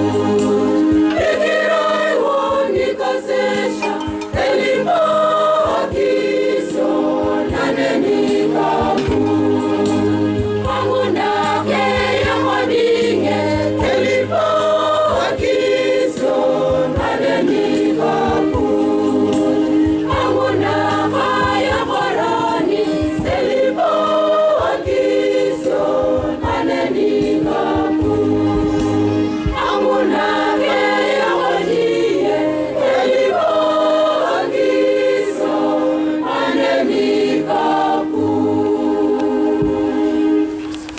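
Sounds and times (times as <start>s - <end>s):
choir singing a hymn: 0.0s - 40.9s
low accompaniment: 0.0s - 40.9s
sharp percussive beats: 3.6s - 5.0s.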